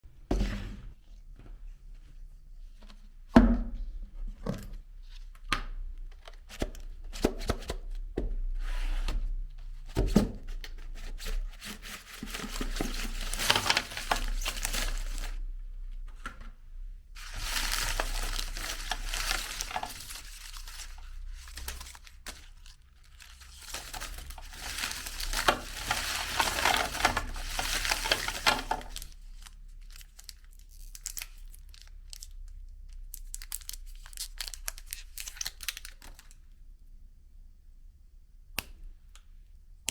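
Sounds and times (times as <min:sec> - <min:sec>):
candy wrappers crinkling and tearing: 0:11.8 - 0:15.4, 0:17.2 - 0:36.6.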